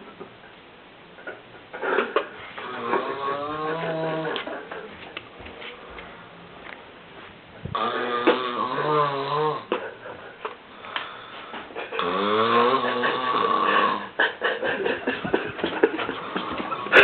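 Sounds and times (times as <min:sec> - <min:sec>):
man snoring heavily: 0:02.6 - 0:04.4, 0:07.7 - 0:09.7, 0:12.0 - 0:14.2.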